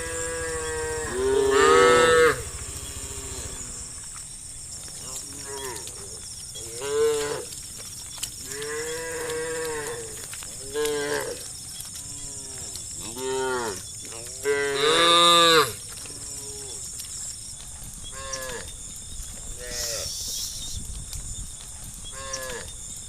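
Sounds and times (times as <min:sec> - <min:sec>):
cows mooing: 0:00.0 - 0:04.2, 0:05.0 - 0:07.6, 0:08.4 - 0:16.9, 0:18.1 - 0:18.8, 0:19.5 - 0:20.2, 0:22.1 - 0:22.8.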